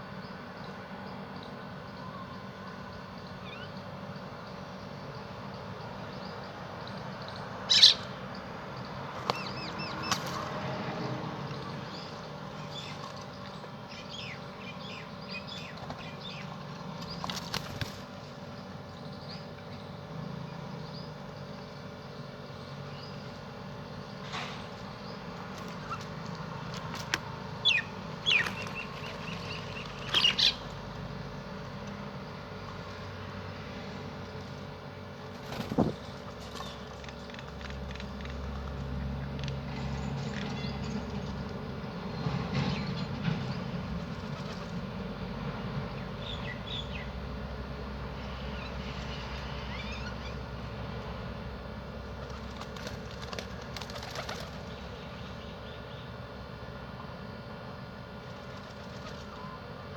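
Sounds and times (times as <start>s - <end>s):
low background hum: 0.0s - 59.9s
birds chirping and calling: 6.9s - 8.4s, 24.1s - 30.9s
loud sharp bird calls: 7.2s - 8.3s, 27.6s - 30.9s.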